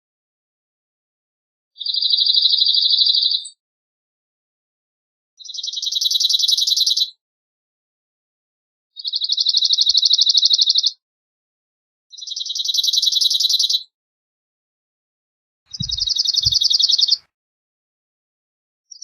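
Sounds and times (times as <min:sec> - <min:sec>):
bunting singing dry trills: 0:15.7 - 0:17.3.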